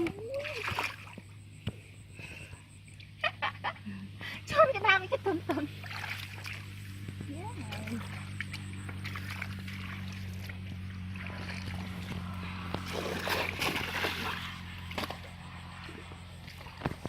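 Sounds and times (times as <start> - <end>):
water splashing and sloshing: 0.0 - 1.5, 5.3 - 17.0
small engine running: 5.1 - 17.0.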